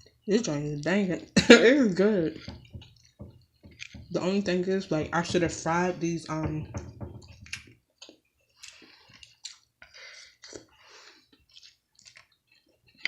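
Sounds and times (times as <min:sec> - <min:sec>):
person chewing with mouth open: 0:07.4 - 0:13.0.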